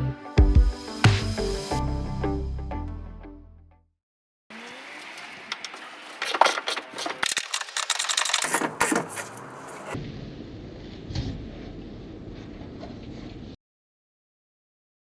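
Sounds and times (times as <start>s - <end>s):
music: 0.0s - 3.9s
workshop background noise: 4.5s - 10.0s
sheet metal clicking and clattering: 6.2s - 10.0s.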